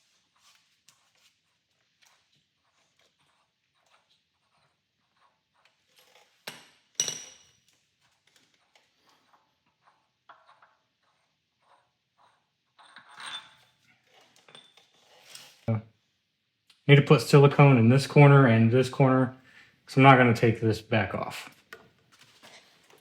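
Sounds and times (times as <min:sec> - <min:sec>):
metal-on-metal clinks: 0:12.8 - 0:13.7.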